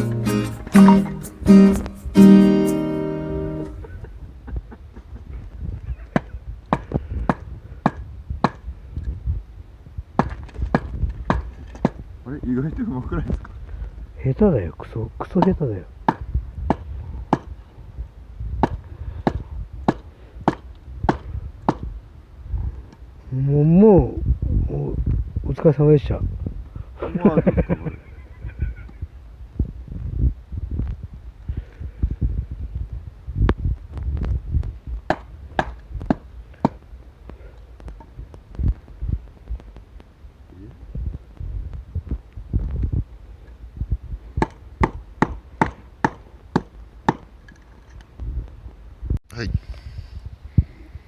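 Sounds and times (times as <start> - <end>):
blade chopping wood: 6.1 - 8.6, 10.2 - 12.0, 15.4 - 17.5, 35.1 - 36.8, 44.4 - 47.3
sharp knocks: 35.1 - 36.8.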